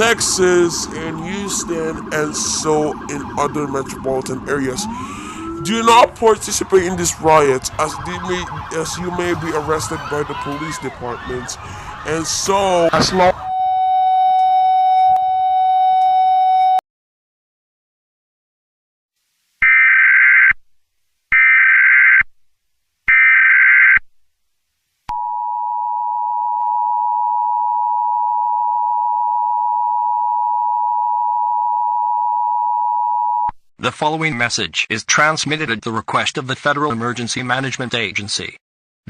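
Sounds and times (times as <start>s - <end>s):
steady tone: 0.0s - 10.4s.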